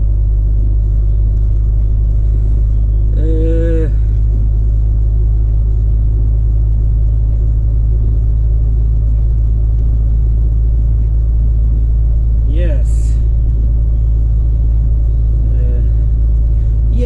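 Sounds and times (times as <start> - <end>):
truck diesel engine rumble: 0.0 - 17.0.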